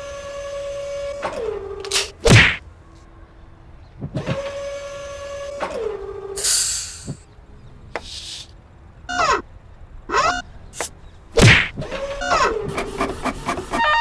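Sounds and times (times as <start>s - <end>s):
hissing air burst: 6.4s - 7.2s.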